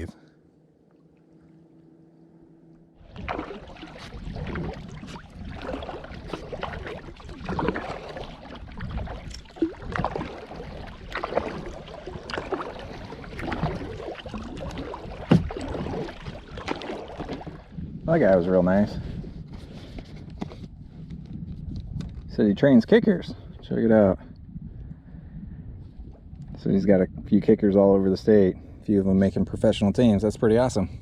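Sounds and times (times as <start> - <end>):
water wash: 3.0 - 17.7
paddle strokes splashing: 3.0 - 17.8
wind noise: 3.0 - 31.0.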